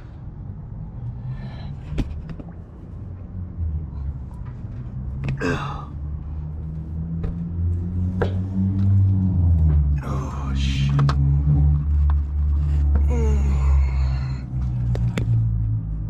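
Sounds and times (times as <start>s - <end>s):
man breathing with effort: 0.0s - 2.4s, 3.8s - 7.0s, 12.6s - 16.0s
steady low hum: 0.0s - 16.0s.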